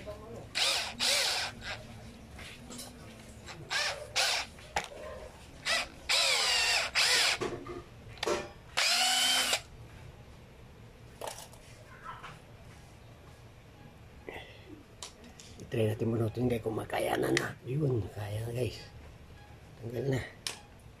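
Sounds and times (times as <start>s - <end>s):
electric drill whining: 0.5s - 1.8s, 3.7s - 4.5s, 5.6s - 7.4s, 8.8s - 9.7s.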